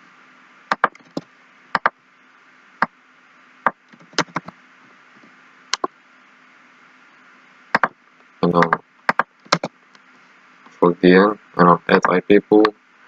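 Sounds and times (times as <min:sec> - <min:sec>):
faint steady hum: 0:00.0 - 0:13.0
keyboard and mouse clicks: 0:00.7 - 0:01.2, 0:03.9 - 0:04.5, 0:08.5 - 0:09.7.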